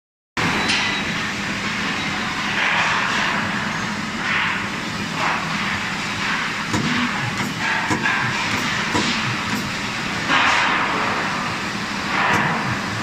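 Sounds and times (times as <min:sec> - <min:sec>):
machine motor hum: 0:05.6 - 0:13.0.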